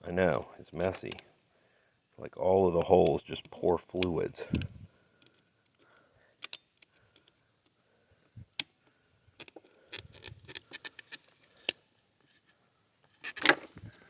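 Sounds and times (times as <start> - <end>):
small clicks and taps from handling: 4.0 - 7.8.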